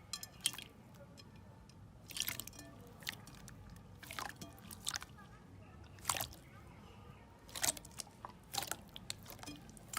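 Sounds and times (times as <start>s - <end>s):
slime squished by hand: 5.9s - 6.5s, 7.4s - 9.9s.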